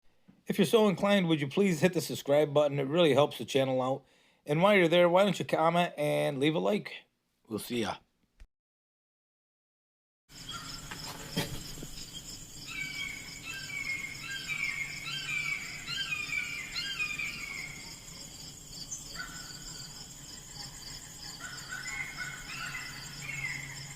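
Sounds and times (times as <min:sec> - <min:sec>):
insects trilling: 0:10.3 - 0:23.9
songbird singing: 0:10.3 - 0:23.9.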